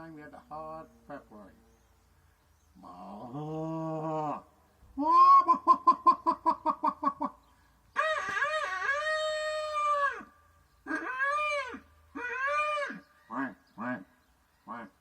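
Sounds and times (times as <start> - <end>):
person making animal-like calls: 5.0 - 7.3, 10.9 - 14.0.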